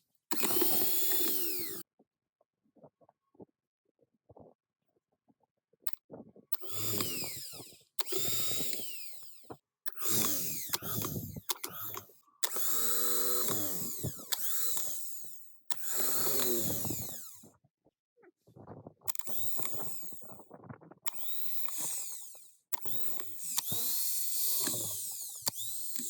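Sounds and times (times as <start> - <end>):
electric drill whining: 0.3 - 1.8, 6.6 - 17.5, 19.1 - 20.5, 21.1 - 26.0.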